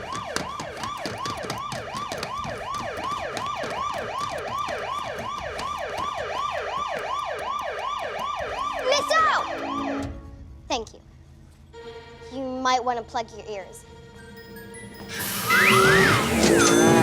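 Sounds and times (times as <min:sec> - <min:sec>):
siren-like yelp wailing: 0:00.0 - 0:10.0, 0:15.4 - 0:17.0.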